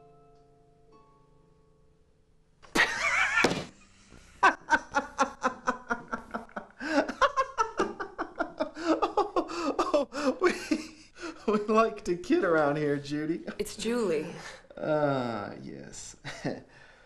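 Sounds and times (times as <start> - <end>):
person laughing loudly: 2.8 - 3.7, 4.4 - 10.9.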